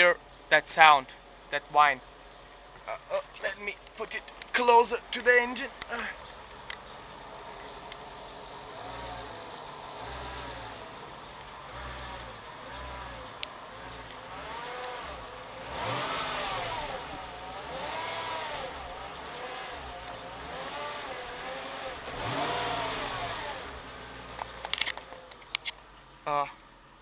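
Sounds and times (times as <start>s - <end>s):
sharp clicks: 3.7s - 4.6s, 5.2s - 6.9s, 14.8s - 15.0s, 20.0s - 20.2s, 24.3s - 25.9s
car engine revving: 5.8s - 25.6s.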